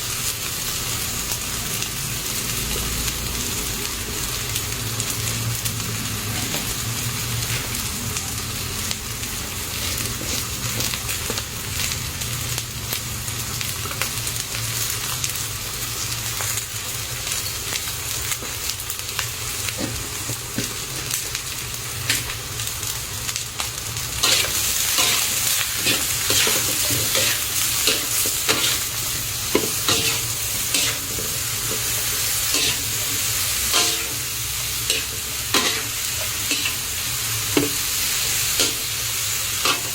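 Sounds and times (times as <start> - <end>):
meat sizzling in oil: 0.0 - 39.9.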